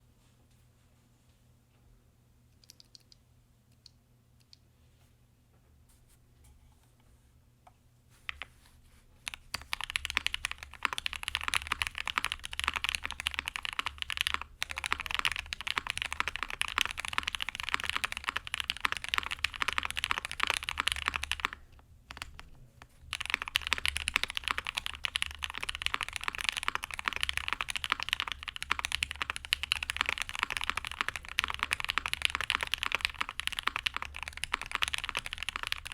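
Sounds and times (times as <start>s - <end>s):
fast mechanical keyboard typing: 9.2s - 35.9s.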